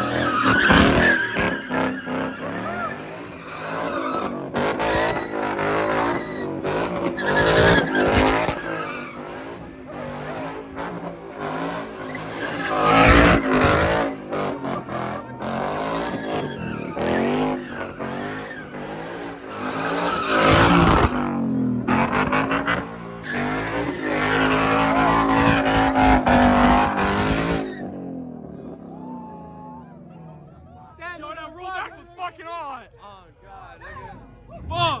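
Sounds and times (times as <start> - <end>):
car engine revving hard: 0.0 - 28.9
tires squealing and skidding: 0.0 - 30.7.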